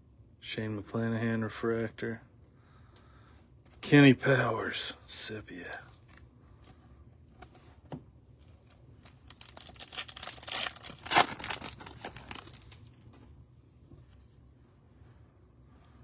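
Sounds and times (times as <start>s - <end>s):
foil wrapper tearing and crinkling: 9.0s - 13.0s.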